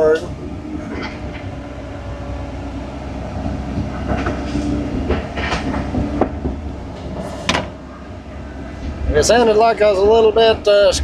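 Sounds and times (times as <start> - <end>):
heavy equipment engine running: 0.0 - 11.0
metallic clanks and squeaks: 0.8 - 1.6, 3.9 - 8.1.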